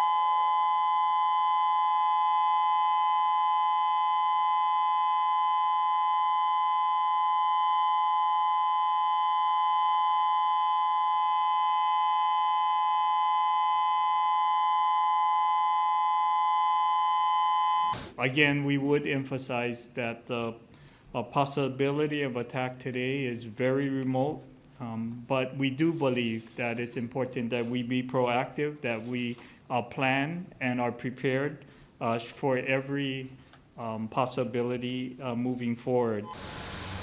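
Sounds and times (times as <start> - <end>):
warning siren steady tone: 0.0 - 18.1, 36.2 - 37.0.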